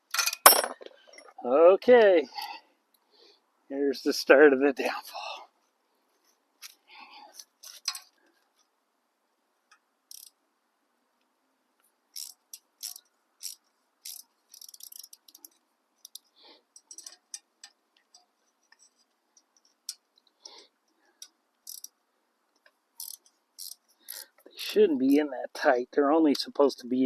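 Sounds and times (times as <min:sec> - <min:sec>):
metal hand tools clicking and rattling: 0:00.1 - 0:01.3, 0:12.2 - 0:16.2, 0:16.8 - 0:17.5, 0:23.0 - 0:24.4.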